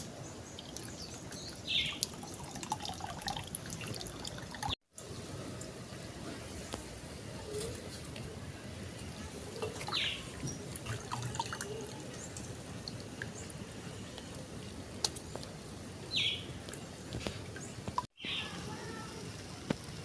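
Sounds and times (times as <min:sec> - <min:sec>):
water dripping and splashing: 0:00.0 - 0:20.0
bird chirping: 0:00.2 - 0:02.0, 0:09.6 - 0:10.7, 0:16.1 - 0:16.6.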